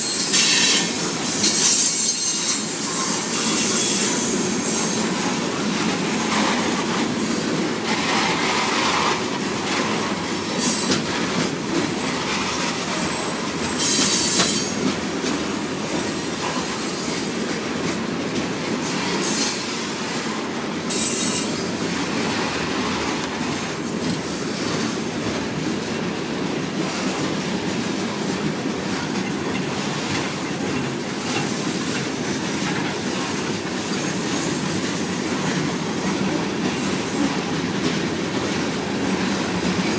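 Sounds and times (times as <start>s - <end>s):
high-pitched wheel squeals: 0.0s - 5.2s
freight train cars rolling: 0.0s - 39.9s
train clanks: 0.0s - 39.9s.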